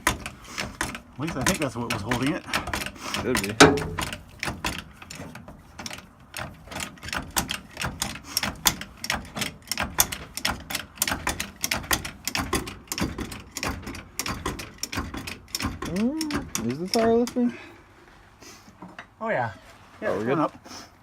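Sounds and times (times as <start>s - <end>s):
jack clicking while pumped: 0.0s - 17.5s.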